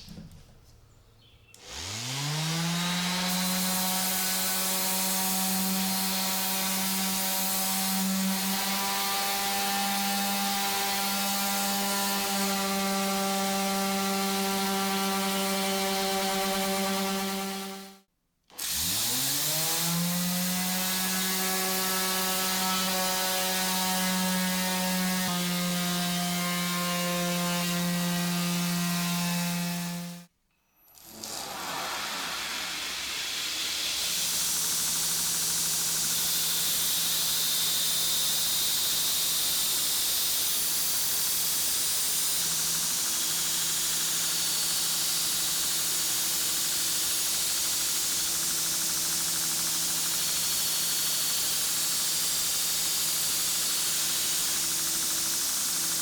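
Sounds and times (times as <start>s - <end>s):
power tool motor whining: 1.6s - 30.2s
abrasive hissing on steel: 31.1s - 34.2s.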